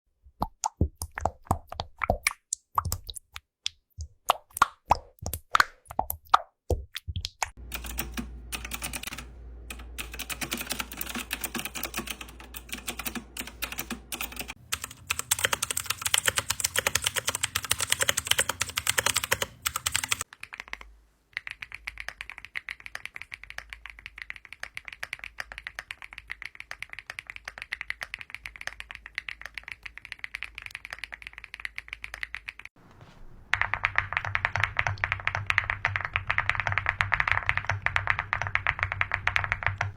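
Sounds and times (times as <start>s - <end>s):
computer keyboard typing: 7.2s - 32.8s, 33.5s - 39.9s.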